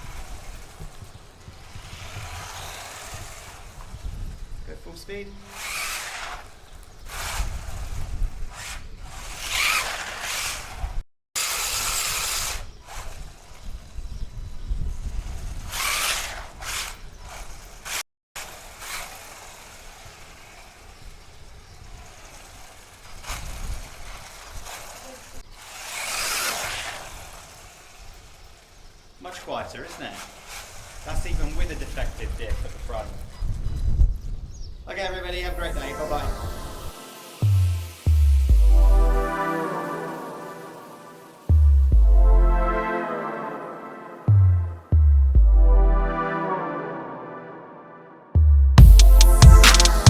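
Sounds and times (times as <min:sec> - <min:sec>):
toy car motor running: 0:01.8 - 0:04.1, 0:05.5 - 0:13.4, 0:15.7 - 0:20.9, 0:22.1 - 0:28.7, 0:30.0 - 0:31.6
held brass-like chord: 0:35.2 - 0:50.0.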